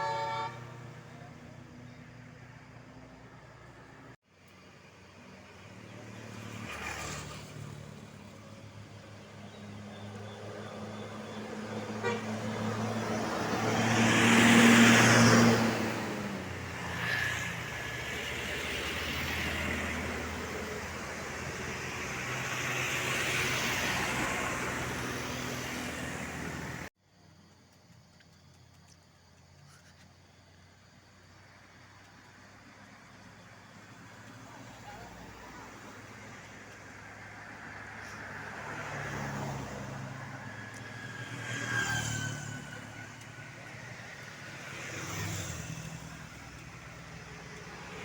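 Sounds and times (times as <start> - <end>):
road traffic passing: 0.0 - 48.0
large vehicle engine passing: 5.2 - 26.9.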